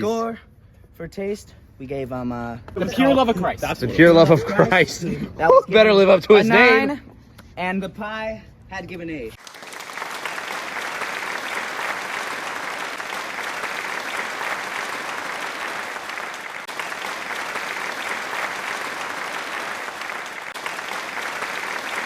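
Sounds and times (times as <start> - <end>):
applause: 9.4 - 22.0.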